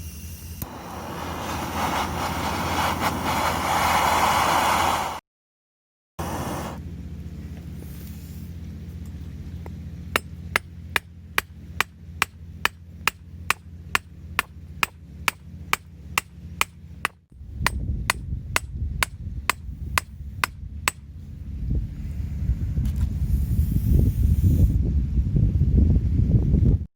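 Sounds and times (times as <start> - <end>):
low rumble of wind or surf: 0.6 - 5.2, 6.2 - 26.9
hammer striking metal wire: 10.2 - 21.0.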